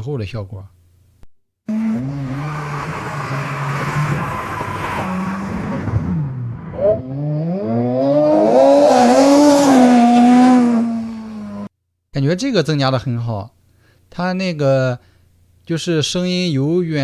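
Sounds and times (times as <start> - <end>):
race car engine revving: 1.7 - 11.7.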